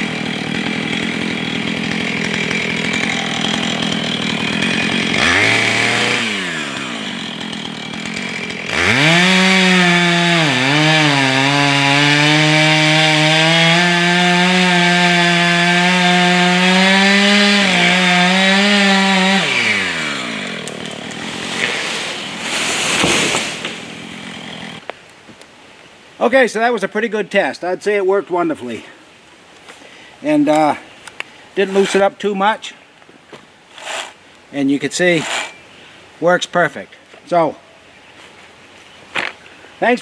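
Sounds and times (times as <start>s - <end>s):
chainsaw cutting wood: 0.0s - 24.9s, 33.8s - 34.2s, 35.2s - 35.6s.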